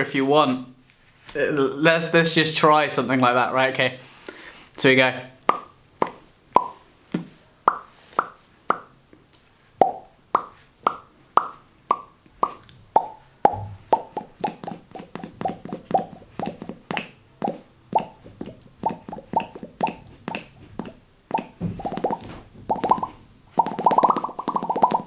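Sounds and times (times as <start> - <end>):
mouth-made bubble pops: 5.5 - 8.9, 9.8 - 25.0.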